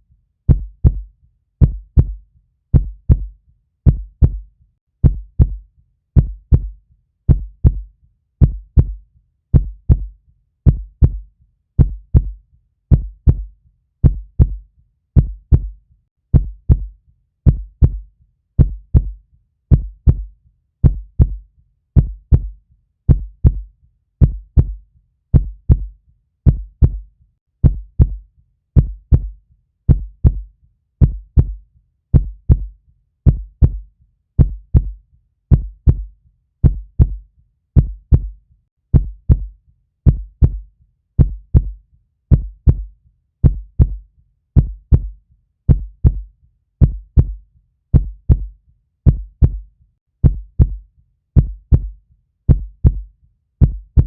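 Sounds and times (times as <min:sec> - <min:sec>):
heartbeat double thump: 0:00.5 - 0:01.0, 0:01.6 - 0:03.3, 0:03.9 - 0:04.4, 0:05.0 - 0:05.6, 0:06.2 - 0:06.7, 0:07.3 - 0:07.8, 0:08.4 - 0:09.0, 0:09.6 - 0:10.1, 0:10.7 - 0:11.2, 0:11.8 - 0:14.6, 0:15.2 - 0:15.7, 0:16.3 - 0:16.9, 0:17.5 - 0:18.0, 0:18.6 - 0:21.4, 0:22.0 - 0:22.5, 0:23.1 - 0:23.6, 0:24.2 - 0:24.8, 0:25.4 - 0:25.9, 0:26.5 - 0:27.0, 0:27.6 - 0:28.2, 0:28.8 - 0:29.3, 0:29.9 - 0:30.4, 0:31.0 - 0:31.6, 0:32.2 - 0:32.7, 0:33.3 - 0:33.8, 0:34.4 - 0:37.2, 0:37.8 - 0:38.3, 0:38.9 - 0:39.5, 0:40.1 - 0:40.6, 0:41.2 - 0:44.0, 0:44.6 - 0:45.1, 0:45.7 - 0:46.2, 0:46.8 - 0:48.5, 0:49.1 - 0:49.6, 0:50.2 - 0:50.8, 0:51.4 - 0:51.9, 0:52.5 - 0:53.0, 0:53.6 - 0:54.0.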